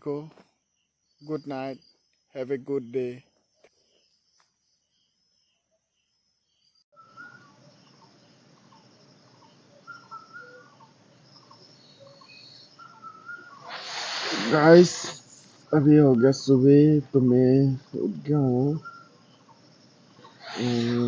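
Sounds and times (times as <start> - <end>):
insects chirping: 0.0 - 21.0
birds chirping and whistling: 7.0 - 7.6, 9.4 - 16.1, 18.4 - 21.0.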